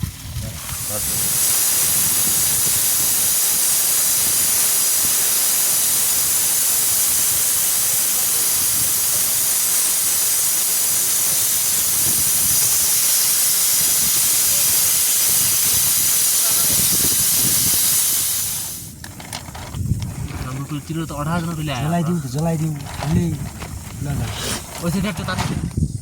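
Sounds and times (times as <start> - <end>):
loud steady hiss: 0.0 - 26.0.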